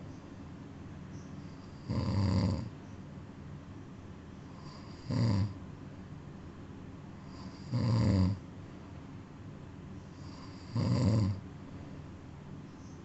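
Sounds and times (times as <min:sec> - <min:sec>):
cat snoring: 0:01.4 - 0:02.7, 0:04.5 - 0:05.6, 0:07.2 - 0:08.4, 0:10.1 - 0:11.4.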